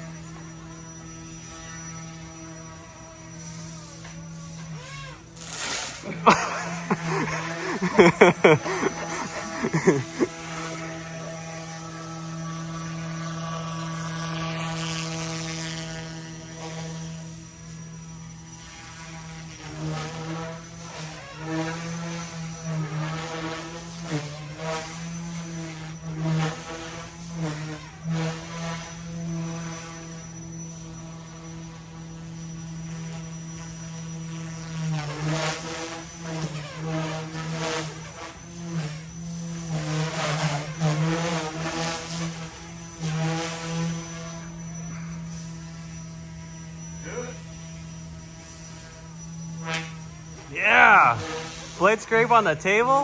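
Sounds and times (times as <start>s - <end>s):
high motor whine: 0.0s - 19.5s, 42.4s - 53.0s
rc helicopter rotors buzzing: 0.0s - 53.0s.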